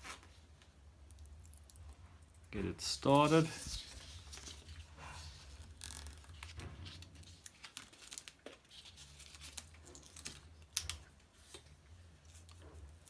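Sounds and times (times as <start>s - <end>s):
handlebar tape crinkling and tearing: 0.0s - 0.4s, 3.2s - 12.7s.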